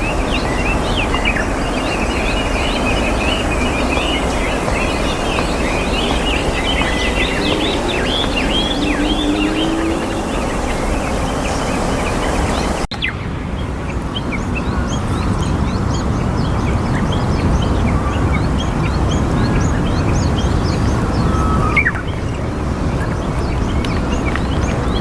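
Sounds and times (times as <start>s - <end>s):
high bird chirps: 0.0s - 11.6s
steady low rumble: 0.0s - 12.2s.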